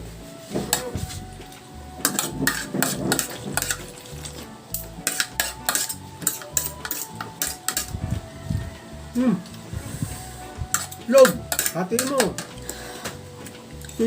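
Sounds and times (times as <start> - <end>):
cutlery clinking on plates: 2.0 - 4.1, 4.8 - 7.9, 10.7 - 12.8.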